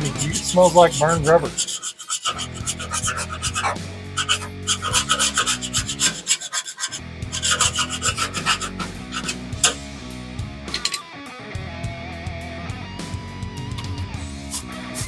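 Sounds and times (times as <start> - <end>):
rock music: 8.8 - 15.0.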